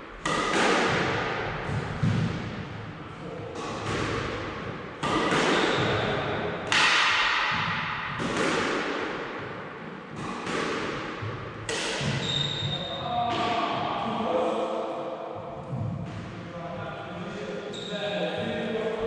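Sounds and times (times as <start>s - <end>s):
squash ball hitting racket and wall: 0.0s - 14.0s, 15.4s - 16.6s.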